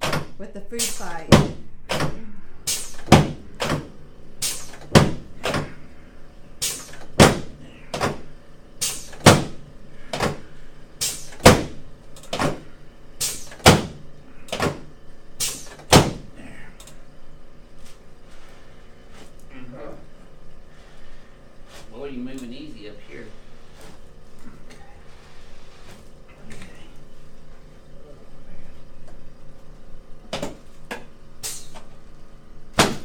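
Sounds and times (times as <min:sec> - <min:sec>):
sharp knocking strikes on back: 0:01.3 - 0:02.1, 0:03.0 - 0:03.9, 0:04.9 - 0:05.3, 0:07.2 - 0:07.5, 0:09.2 - 0:09.6, 0:11.1 - 0:11.8, 0:13.6 - 0:14.0, 0:15.9 - 0:16.3, 0:32.8 - 0:33.0.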